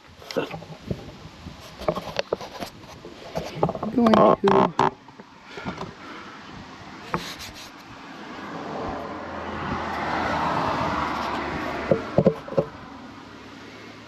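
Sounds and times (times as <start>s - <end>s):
vehicle passing by: 7.9s - 14.0s.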